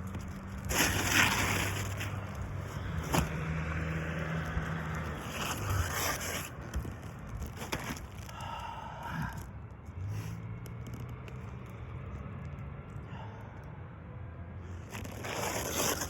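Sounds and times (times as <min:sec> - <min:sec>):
scraping on roof shingles: 0:00.0 - 0:08.4, 0:14.9 - 0:16.0.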